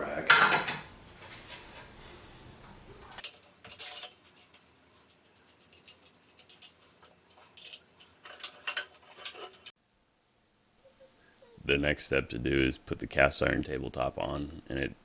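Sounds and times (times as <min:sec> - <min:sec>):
metallic clinks of steel parts: 0:03.2 - 0:04.7, 0:05.4 - 0:09.7.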